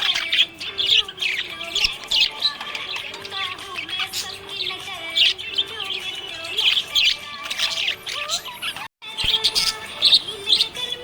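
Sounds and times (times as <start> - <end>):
budgerigars chirping and warbling: 0.0 - 11.0.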